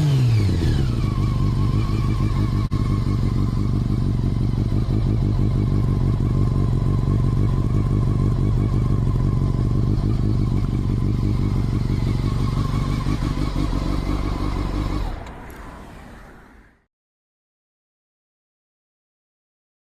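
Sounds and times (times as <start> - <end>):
motorcycle engine idling: 0.4 - 15.2.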